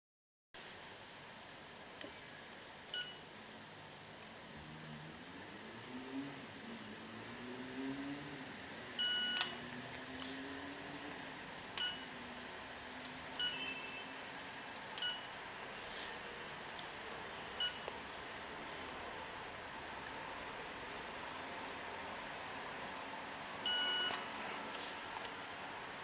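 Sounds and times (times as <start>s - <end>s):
electronic control panel beeps: 2.9s - 3.2s, 9.0s - 9.6s, 11.8s - 12.1s, 13.4s - 13.8s, 15.0s - 15.3s, 17.6s - 17.9s, 23.7s - 24.2s.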